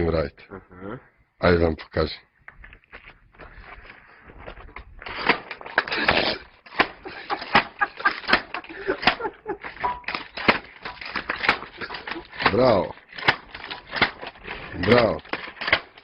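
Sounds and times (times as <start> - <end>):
machine clattering: 6.8 - 16.0.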